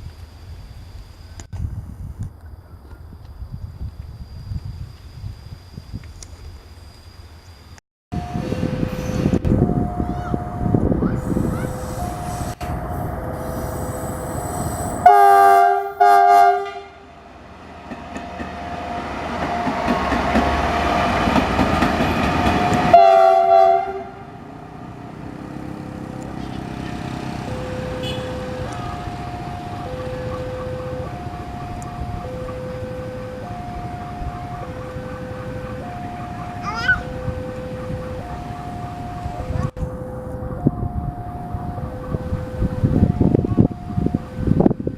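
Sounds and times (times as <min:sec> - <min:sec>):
locomotive engine and wheels: 0:00.0 - 0:44.9
two-tone warning alarm: 0:06.6 - 0:16.9, 0:18.1 - 0:24.3, 0:26.9 - 0:44.9
locomotive horn blasts: 0:14.4 - 0:17.2, 0:22.6 - 0:24.4, 0:27.8 - 0:29.2.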